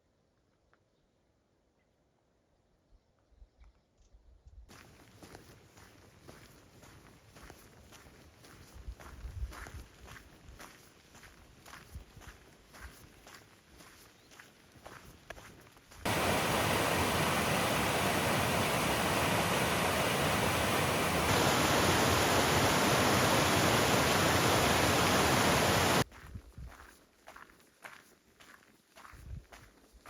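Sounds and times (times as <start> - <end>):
footsteps on road: 4.7 - 17.0, 26.0 - 30.0
fast-flowing water rushing: 16.1 - 26.0.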